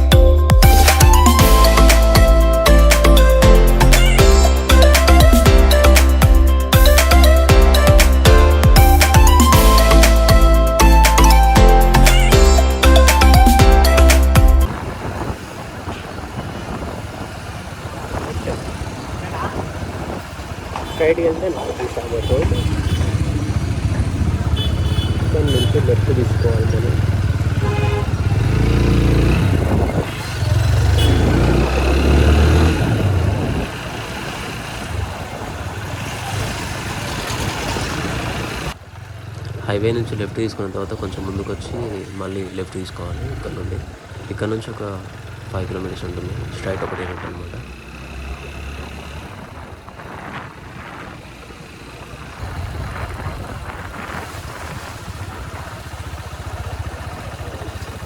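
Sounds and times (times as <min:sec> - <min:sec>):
motorcycle engine: 0:00.0 - 0:58.0
wind: 0:00.0 - 0:58.0
traffic noise: 0:12.6 - 0:58.0.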